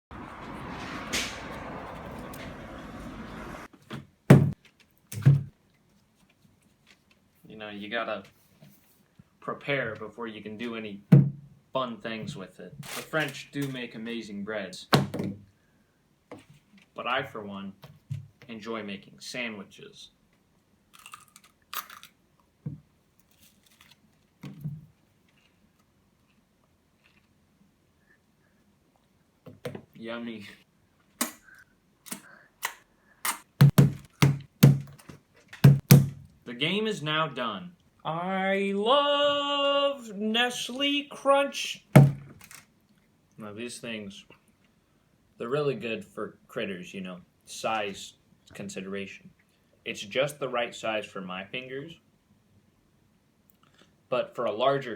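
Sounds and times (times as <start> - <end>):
dull thumps: 4.3 - 4.6, 33.6 - 35.0, 35.6 - 36.3, 41.9 - 42.4
loud short thuds: 4.3 - 4.6, 33.6 - 35.0, 35.6 - 36.3, 42.0 - 42.3
crinkly rustling: 23.2 - 24.4.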